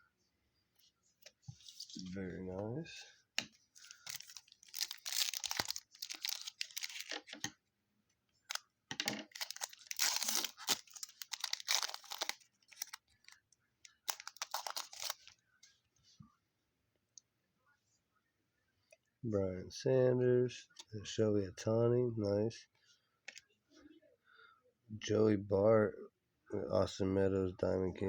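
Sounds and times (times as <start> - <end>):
trading cards rustling: 3.4 - 7.5, 8.5 - 15.3.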